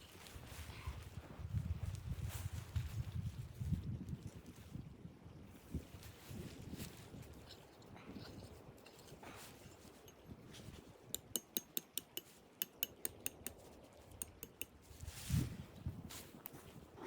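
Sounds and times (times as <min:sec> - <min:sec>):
sharp clinks of hard objects: 0:11.2 - 0:13.5.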